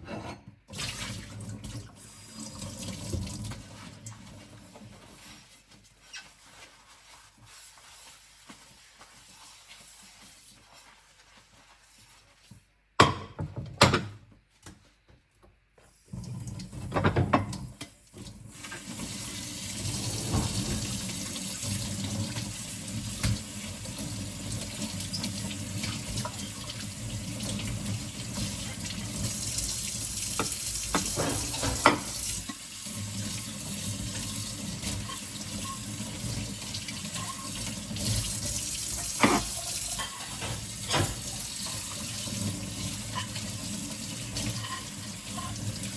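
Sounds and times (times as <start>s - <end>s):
kitchen tap running: 0.7s - 5.5s, 16.1s - 45.9s
dishes clinking: 30.4s - 32.2s, 39.0s - 41.8s.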